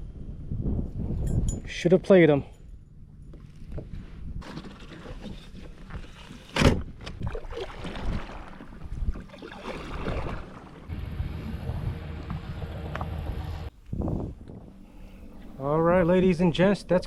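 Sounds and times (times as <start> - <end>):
low steady hum: 8.6 - 17.0.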